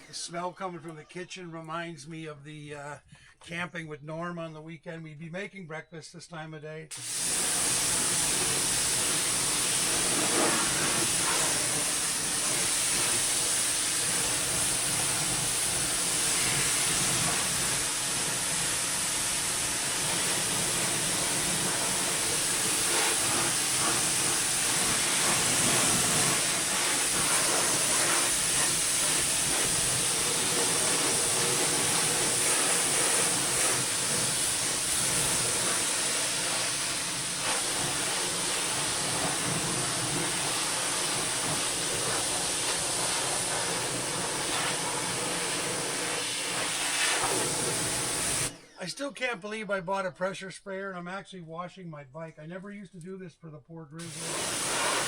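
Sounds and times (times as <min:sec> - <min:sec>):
pressure washer water jet hissing: 0:06.9 - 0:48.7, 0:54.0 - 0:55.0.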